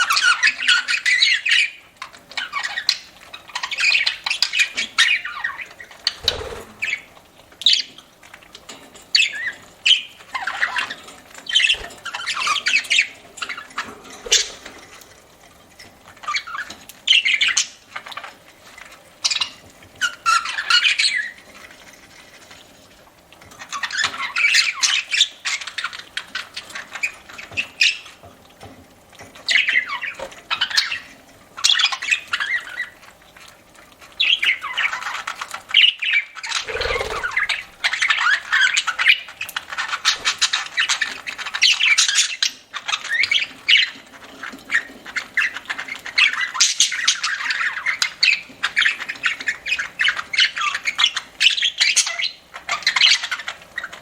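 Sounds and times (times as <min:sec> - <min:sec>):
budgerigars chattering and squawking: 0:02.4 - 0:07.9, 0:11.5 - 0:13.7, 0:14.3 - 0:14.7, 0:35.8 - 0:43.9.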